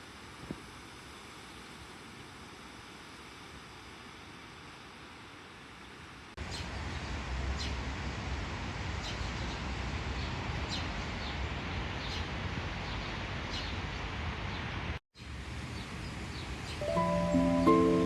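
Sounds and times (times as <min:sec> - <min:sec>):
bird chirping: 0:16.7 - 0:18.0.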